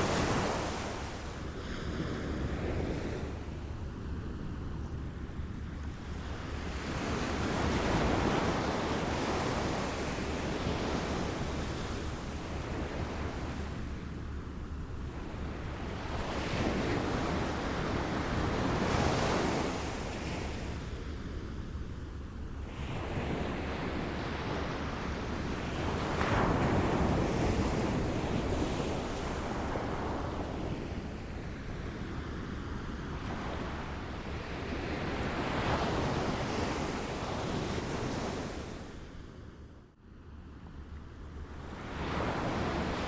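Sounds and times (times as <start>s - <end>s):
small waves lapping ashore: 0.0s - 3.6s.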